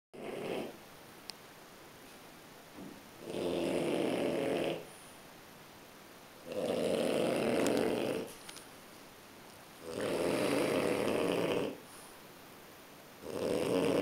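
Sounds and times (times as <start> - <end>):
dog snoring: 0.2 - 0.8, 3.2 - 5.0, 6.4 - 8.4, 9.8 - 11.9, 13.2 - 14.0.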